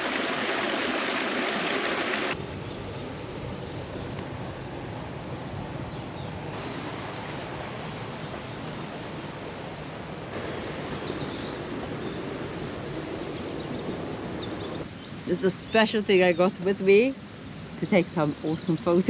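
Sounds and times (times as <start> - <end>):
rushing water: 0.0 - 2.4, 6.6 - 15.4.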